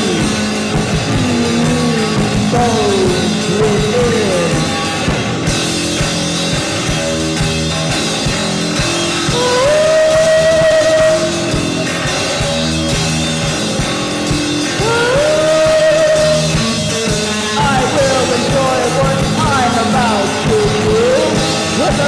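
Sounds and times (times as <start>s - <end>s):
drum kit beat: 0.0s - 22.0s
rock band playing: 0.0s - 22.0s.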